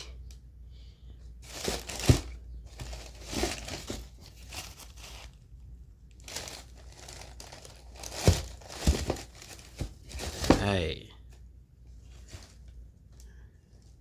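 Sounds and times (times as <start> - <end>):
paper packing rustling: 1.4 - 5.5, 6.2 - 10.9.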